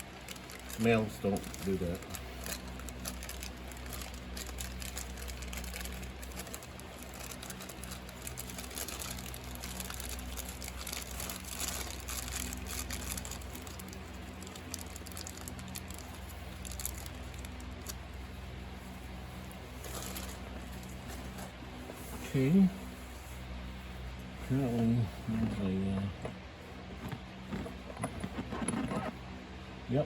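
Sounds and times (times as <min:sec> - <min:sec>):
packaging rustling and crinkling: 0:00.0 - 0:21.8
steady low hum: 0:00.0 - 0:30.0.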